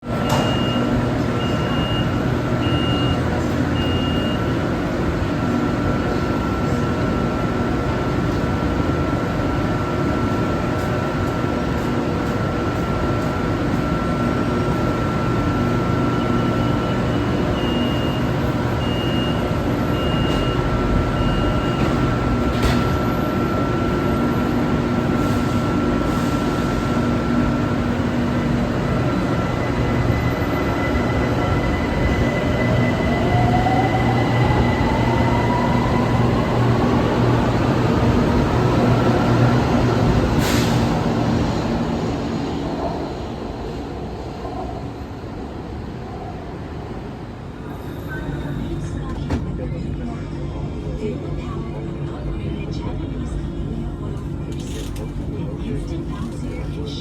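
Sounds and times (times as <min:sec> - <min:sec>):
train hum and whine: 0:00.0 - 0:57.0
high beeps: 0:16.3 - 0:22.1.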